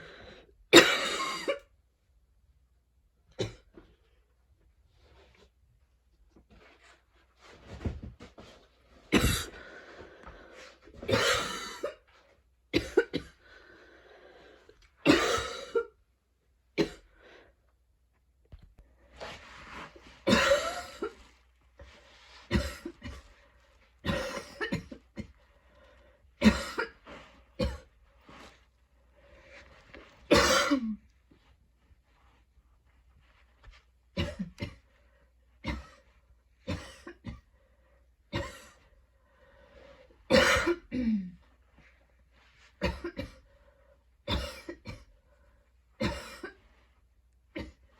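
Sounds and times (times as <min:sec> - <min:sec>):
woman coughing: 0:00.7 - 0:01.7, 0:09.1 - 0:09.6, 0:11.0 - 0:12.0, 0:12.7 - 0:13.4, 0:15.1 - 0:15.9, 0:20.3 - 0:21.1, 0:22.5 - 0:23.2, 0:24.0 - 0:25.3, 0:26.4 - 0:27.0, 0:30.3 - 0:31.0, 0:34.2 - 0:34.8, 0:36.7 - 0:37.4, 0:40.3 - 0:41.4, 0:42.8 - 0:43.4, 0:44.3 - 0:45.1, 0:46.0 - 0:46.6
quiet breaths: 0:13.3 - 0:15.0, 0:25.2 - 0:26.4, 0:37.3 - 0:40.3, 0:41.3 - 0:44.2.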